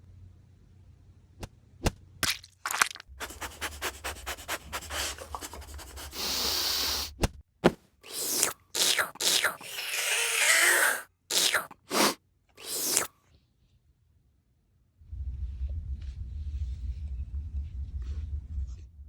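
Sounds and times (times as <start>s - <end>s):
scraping and rubbing noises: 2.7s - 9.9s, 10.8s - 13.1s
steady hiss: 3.2s - 7.1s.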